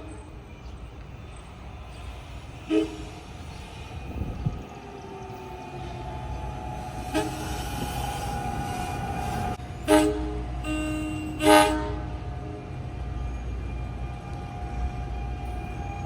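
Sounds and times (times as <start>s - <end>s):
train rumbling: 0.0s - 16.0s
locomotive air horn: 2.7s - 3.1s, 7.0s - 7.9s, 9.8s - 12.6s.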